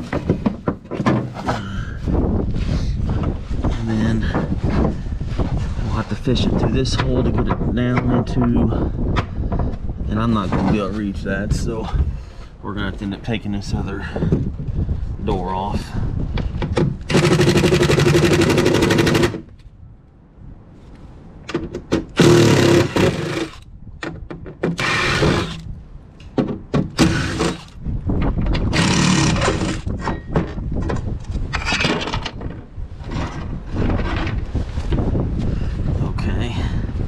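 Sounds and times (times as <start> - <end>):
clattering of handling: 0.0 - 1.7
impact driver hammering buzz: 17.1 - 19.4, 22.2 - 23.6, 24.7 - 25.7, 26.9 - 27.8, 28.7 - 29.9.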